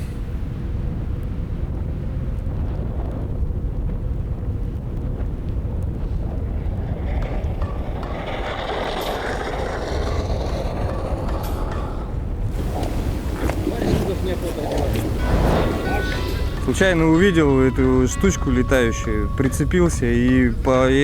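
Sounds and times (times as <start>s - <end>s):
wind rumbling on microphone: 0.0s - 21.0s
rushing hiss: 12.5s - 17.2s.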